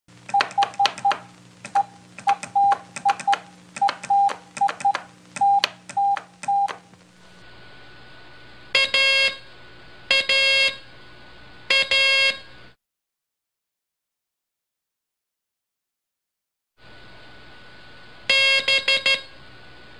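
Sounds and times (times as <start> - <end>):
long buzzy beeps: 0.3 - 6.8
morse code tone: 0.3 - 6.8, 8.8 - 9.4, 10.1 - 10.8, 11.7 - 12.4, 18.3 - 19.3.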